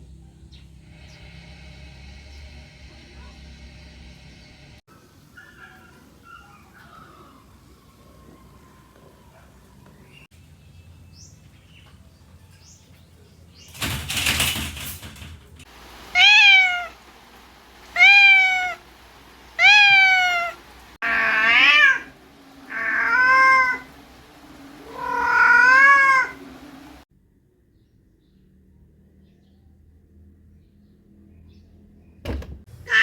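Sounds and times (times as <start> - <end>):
cat meowing: 16.1 - 17.0, 17.9 - 18.8, 19.6 - 24.0, 24.8 - 26.5.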